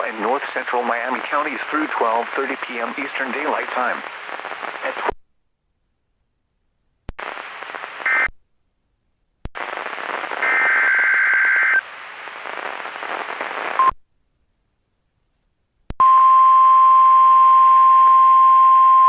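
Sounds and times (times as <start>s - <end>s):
static-laden data squawks: 8.0s - 8.3s, 9.6s - 11.8s.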